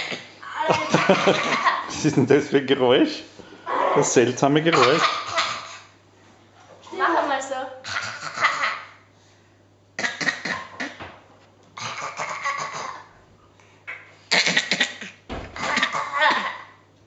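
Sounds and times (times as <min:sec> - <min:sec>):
raspy cough-like noises: 0:04.7 - 0:05.9, 0:07.8 - 0:09.0, 0:10.0 - 0:11.1, 0:11.8 - 0:13.2, 0:13.9 - 0:16.8.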